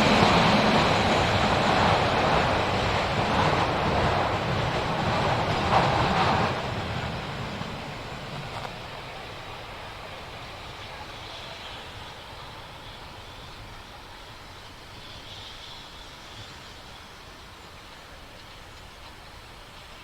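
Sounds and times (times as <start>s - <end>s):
train rumbling on rails: 0.0s - 20.0s.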